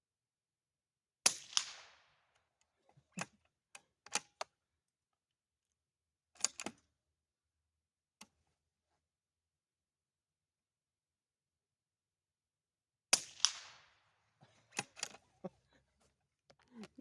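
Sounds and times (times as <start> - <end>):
rifle shot crack: 13.2 - 14.0
rifle bolt clicking: 14.8 - 15.2.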